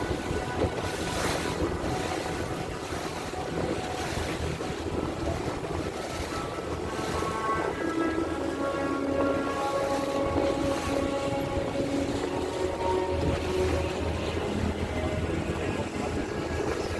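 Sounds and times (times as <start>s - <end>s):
low boat engine rumble: 0.0s - 16.9s
rushing water: 0.0s - 16.9s
wind buffeting microphone: 0.0s - 16.9s.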